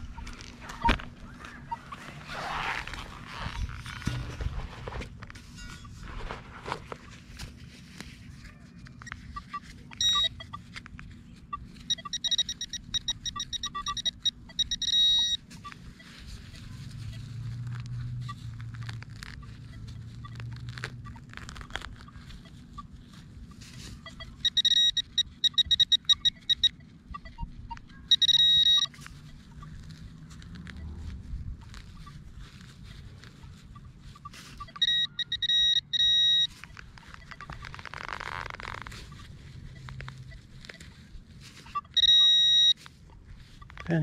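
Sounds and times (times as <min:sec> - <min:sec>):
faint lower blips: 0:08.9 - 0:44.0
pinpointer high-pitched chirps: 0:09.1 - 0:10.6, 0:11.4 - 0:17.2, 0:24.0 - 0:29.7, 0:33.6 - 0:37.8, 0:41.6 - 0:42.8.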